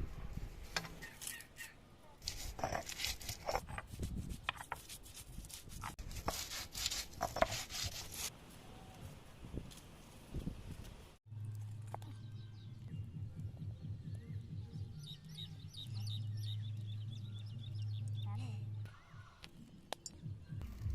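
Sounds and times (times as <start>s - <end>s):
food preparation scraping and cutting: 2.2s - 8.3s.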